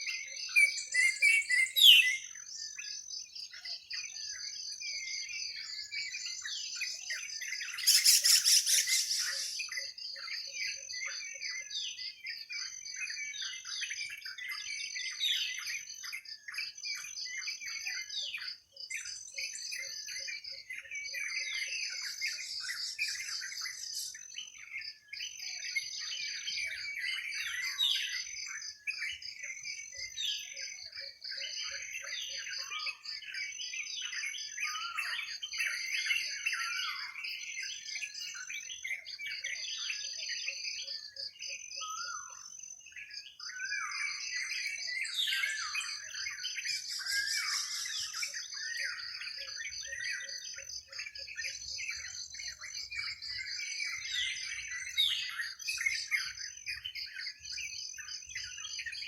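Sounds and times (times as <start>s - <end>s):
birds chirping: 0.6s - 3.0s, 3.8s - 10.1s, 21.4s - 30.5s, 33.7s - 59.0s.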